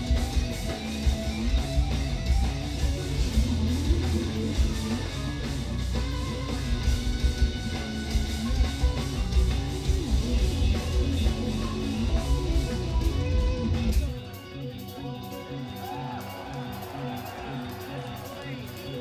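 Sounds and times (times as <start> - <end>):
heavy bass and drums: 0.0 - 14.2
electric guitars playing riffs: 0.0 - 19.0.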